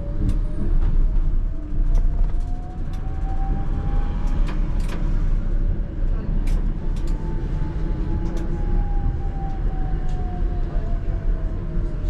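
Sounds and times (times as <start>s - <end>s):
tram wheels rumbling on rail: 0.0s - 12.0s.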